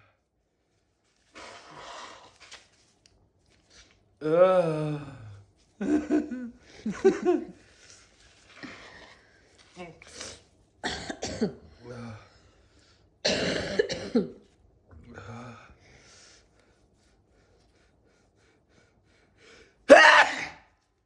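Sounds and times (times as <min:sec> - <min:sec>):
person coughing harshly: 0:10.8 - 0:11.7, 0:13.2 - 0:14.4, 0:19.9 - 0:20.7.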